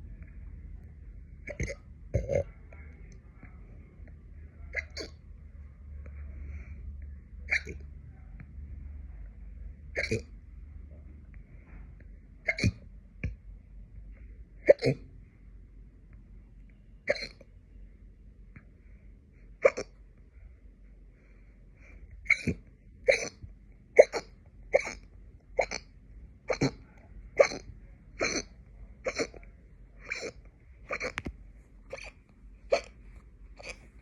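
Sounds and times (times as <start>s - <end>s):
person hiccuping: 1.5s - 2.5s, 4.7s - 5.2s, 7.5s - 7.8s, 10.0s - 10.3s, 12.4s - 12.8s, 14.6s - 15.1s, 17.1s - 17.5s, 19.6s - 20.0s, 22.3s - 25.9s, 26.5s - 26.8s, 27.4s - 29.4s, 30.0s - 31.3s, 31.9s - 33.0s, 33.6s - 33.9s.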